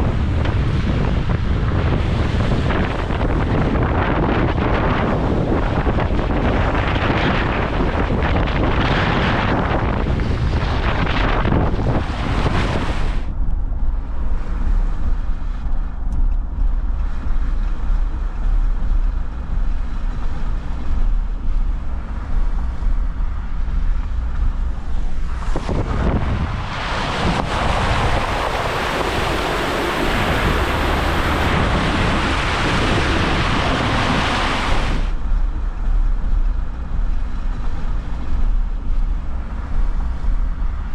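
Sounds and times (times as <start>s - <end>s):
wind buffeting microphone: 0.0s - 40.9s
rushing water hiss: 24.8s - 35.3s.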